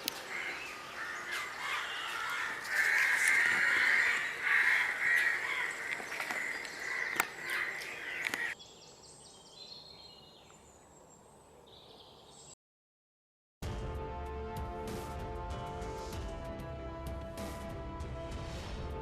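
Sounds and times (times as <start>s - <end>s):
birds calling loudly: 0.0s - 12.6s
quiet outdoor background: 0.0s - 12.6s
music: 13.6s - 19.0s.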